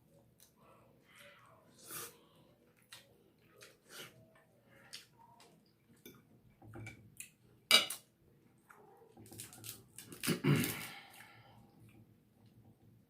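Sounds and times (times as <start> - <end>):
cutlery and dishes clinking: 7.7 - 8.0.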